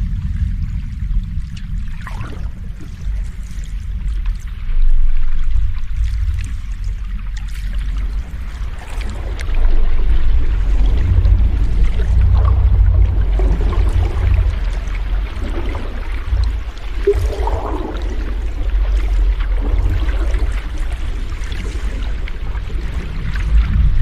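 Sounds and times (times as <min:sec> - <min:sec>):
deep low rumble: 0:00.0 - 0:24.0
sea waves washing in: 0:00.0 - 0:24.0.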